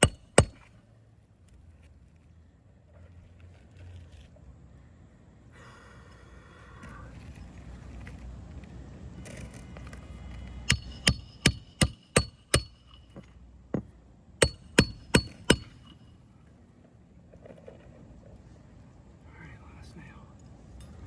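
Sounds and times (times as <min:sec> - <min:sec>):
hatchet hammering nails: 0:00.0 - 0:00.7, 0:10.6 - 0:16.0.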